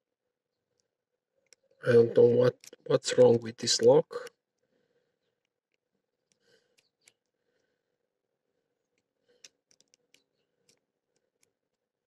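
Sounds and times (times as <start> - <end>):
lock pick metallic clicks: 9.0 - 11.6.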